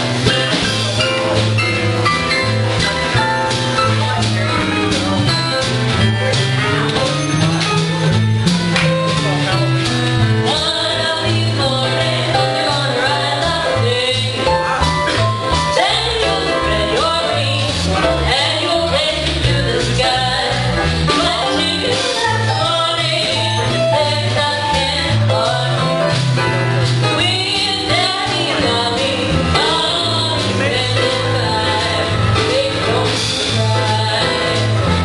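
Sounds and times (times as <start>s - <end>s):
bass line: 0.0s - 35.0s
guitar: 0.0s - 35.0s
person singing: 27.3s - 35.0s.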